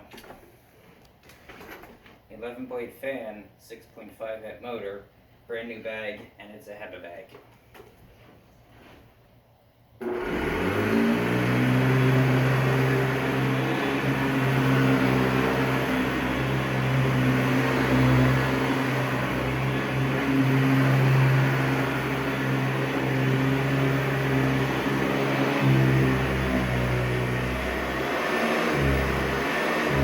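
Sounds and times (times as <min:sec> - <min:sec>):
vacuum cleaner running: 0:10.0 - 0:30.0.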